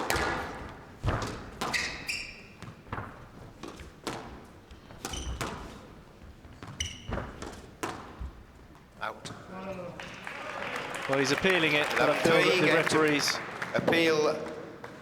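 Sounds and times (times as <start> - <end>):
court shoes squeaking on floor: 0.0 - 10.0.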